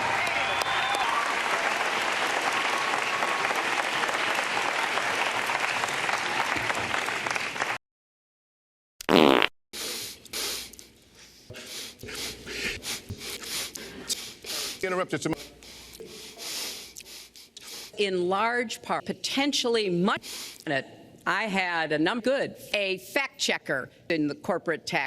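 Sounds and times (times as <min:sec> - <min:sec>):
audience applauding: 0:00.0 - 0:07.8
person sniffing: 0:09.8 - 0:18.0.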